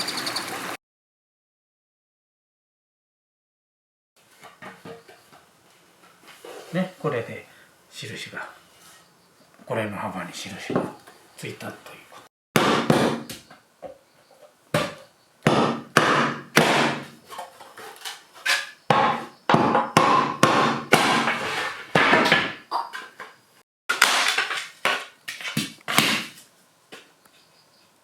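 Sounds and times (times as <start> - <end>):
bamboo knocking and cracking: 14.7 - 17.2, 18.4 - 22.6, 23.9 - 27.1.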